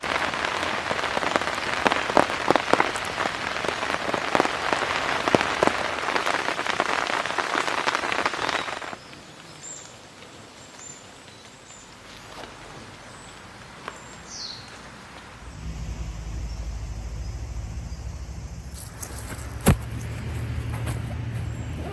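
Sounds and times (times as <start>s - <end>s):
heavy rain pattering on tarp: 0.0s - 16.1s.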